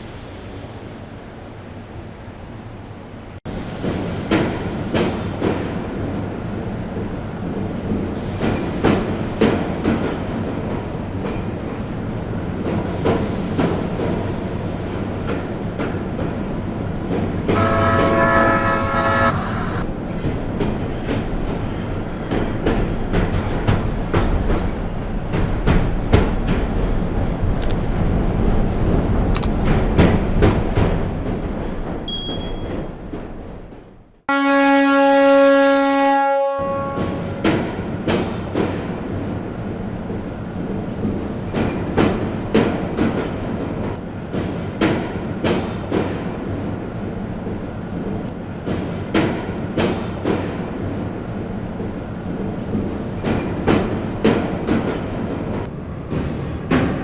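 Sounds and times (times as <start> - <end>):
train horn: 17.5 - 19.9, 34.3 - 37.5.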